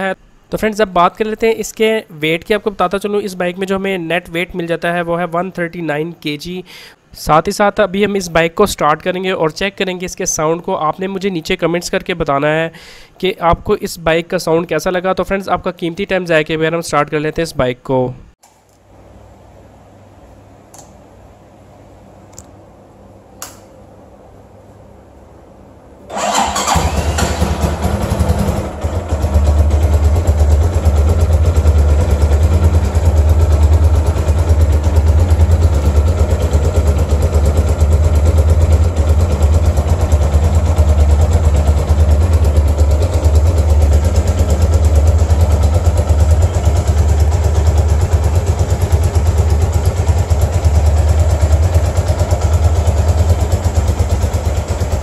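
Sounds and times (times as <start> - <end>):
motorcycle engine starting and running: 26.1 - 55.0.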